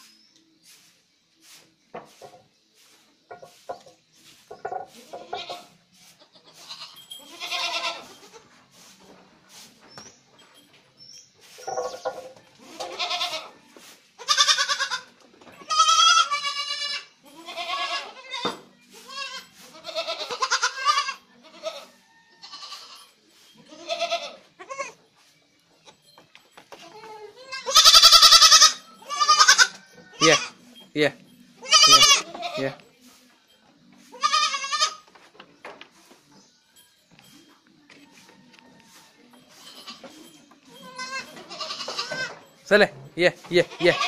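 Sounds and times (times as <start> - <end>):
goats bleating: 5.1 - 8.5, 12.7 - 13.6, 14.2 - 18.4, 19.0 - 23.0, 23.7 - 25.0, 26.8 - 30.6, 31.6 - 32.8, 34.1 - 35.1, 40.7 - 42.3, 43.6 - 44.0.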